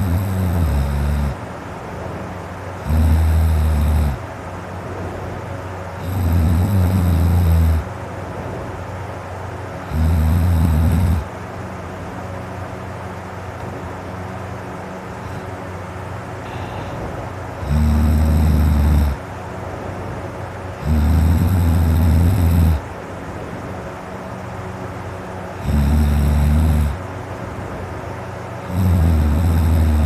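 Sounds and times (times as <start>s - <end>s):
man snoring deeply: 0.0s - 1.4s, 2.8s - 4.2s, 6.0s - 7.9s, 9.8s - 11.3s, 16.4s - 19.2s, 20.8s - 22.9s, 25.5s - 27.1s, 28.6s - 30.0s.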